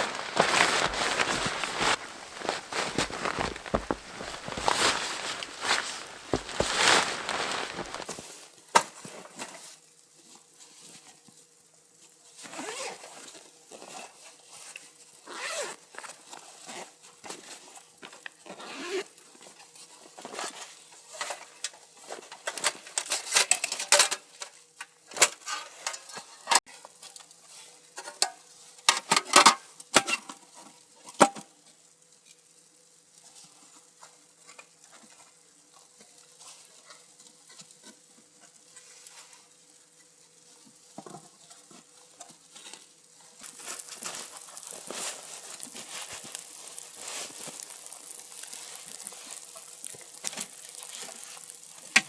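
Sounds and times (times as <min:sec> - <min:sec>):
camping gear rustling and knocking: 0:00.0 - 0:08.3.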